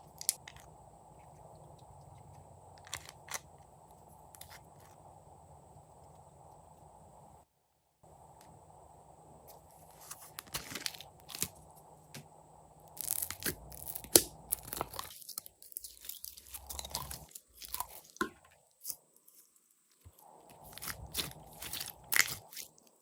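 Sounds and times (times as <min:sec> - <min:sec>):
slime squeezed by hand crackling: 0:13.0 - 0:18.2, 0:20.6 - 0:22.8.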